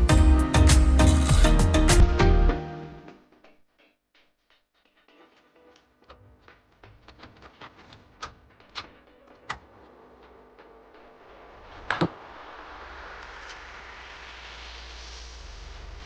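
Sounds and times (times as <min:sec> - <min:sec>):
steady hiss: 0:11.2 - 0:16.0.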